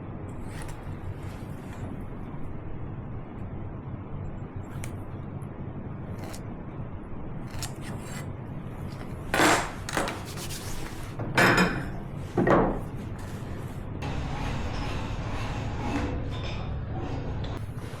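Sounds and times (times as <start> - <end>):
low steady hum: 0.0 - 18.0
tool scraping wood: 0.4 - 1.9, 6.2 - 6.4, 7.5 - 11.1, 13.2 - 18.0.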